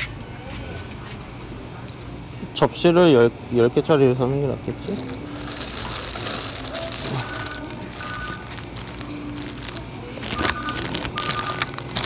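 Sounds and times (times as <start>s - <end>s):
background hum: 4.6s - 12.0s.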